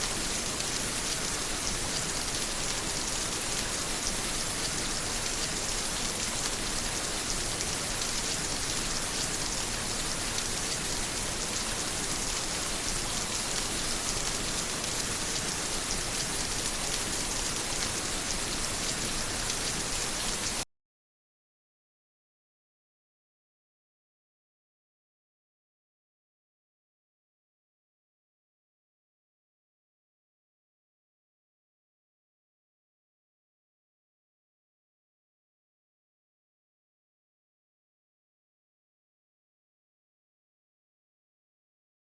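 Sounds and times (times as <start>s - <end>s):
rain falling: 0.0s - 20.6s.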